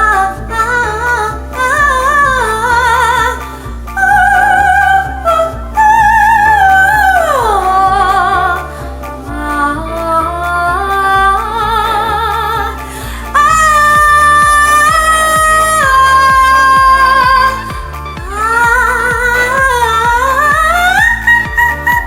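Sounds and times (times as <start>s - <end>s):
repeating bass accompaniment: 0.0s - 22.0s
woman singing operatic notes: 4.0s - 8.7s, 9.4s - 22.0s.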